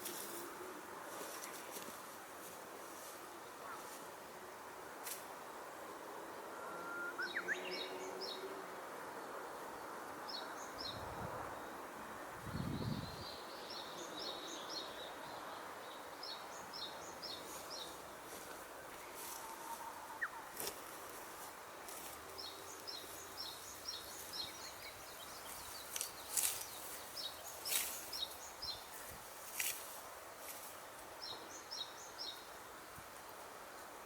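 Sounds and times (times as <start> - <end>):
steady outdoor hiss: 0.0 - 34.0
songbirds singing: 6.6 - 8.6, 9.8 - 20.9, 21.9 - 33.0.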